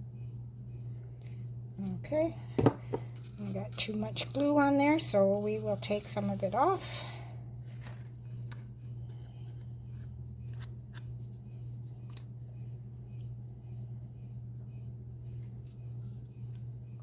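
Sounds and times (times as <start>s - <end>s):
low electrical hum: 0.0s - 17.0s
paper clicks and rustles: 7.6s - 11.2s.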